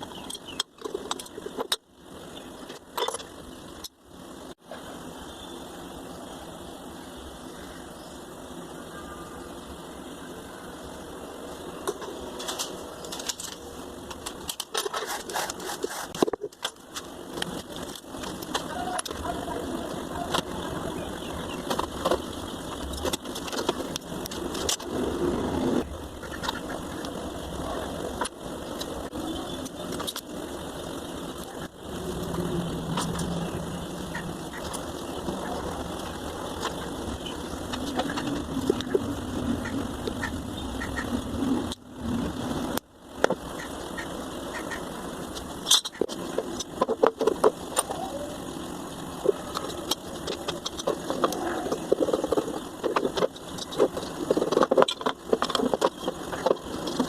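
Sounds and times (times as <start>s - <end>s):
sharp clicks and knocks: 21.6s - 25.0s, 44.6s - 48.0s, 49.2s - 57.0s.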